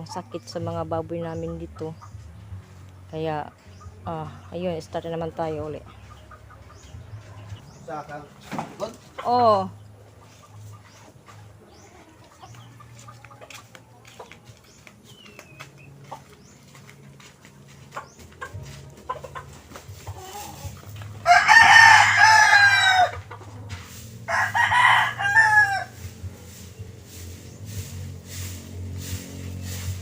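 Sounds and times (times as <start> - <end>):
rooster crowing: 21.2 - 23.2, 24.3 - 26.0.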